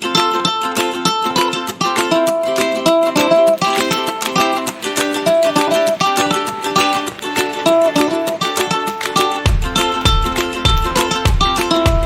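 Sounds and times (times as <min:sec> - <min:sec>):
plucked string tune: 0:03.4 - 0:12.0.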